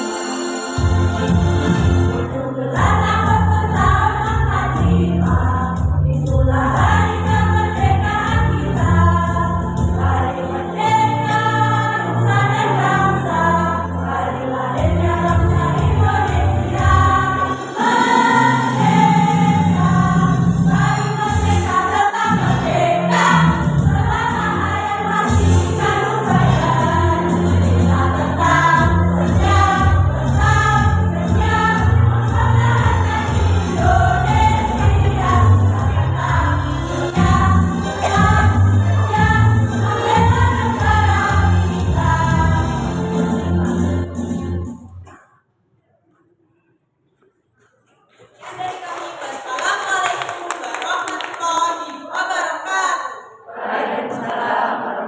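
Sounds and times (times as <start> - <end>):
instrumental accompaniment with beat: 0.0 - 10.2
women's choir singing: 1.7 - 44.0, 52.2 - 55.0.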